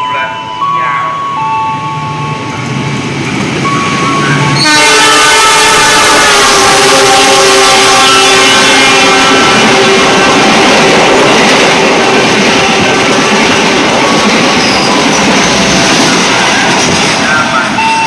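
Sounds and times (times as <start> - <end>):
train wheels running on rails: 0.0 - 18.0
locomotive horn: 3.6 - 13.0.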